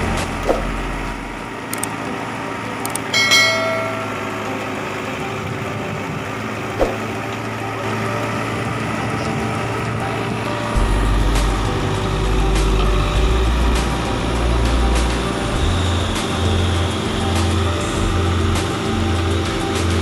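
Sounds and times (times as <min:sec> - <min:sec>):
diesel machinery running: 0:00.0 - 0:20.0
metallic clang: 0:03.1 - 0:04.5.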